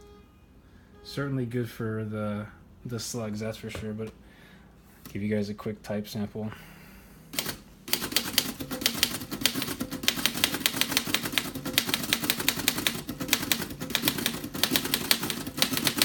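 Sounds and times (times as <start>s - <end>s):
manual typewriter typing: 7.4s - 16.0s.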